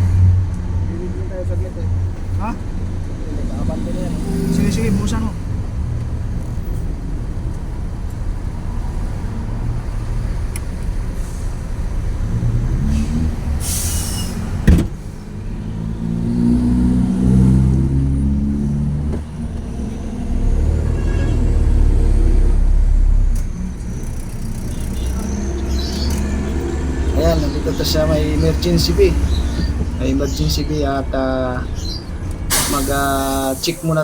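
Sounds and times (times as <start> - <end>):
air hiss: 13.0 - 14.5, 32.5 - 34.0
sharp clunk: 14.6 - 15.0
truck diesel engine running: 18.6 - 34.0.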